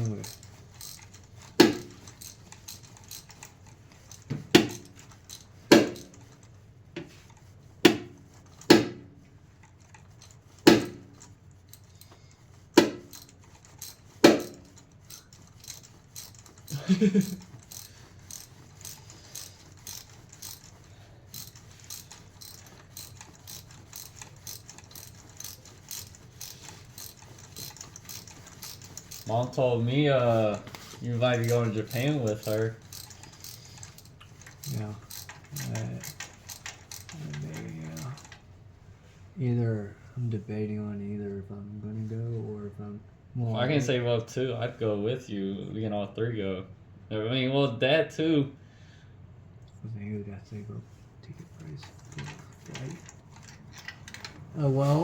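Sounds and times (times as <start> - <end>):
socket ratchet clicking: 0.0 - 6.5, 9.6 - 29.6, 30.3 - 38.4.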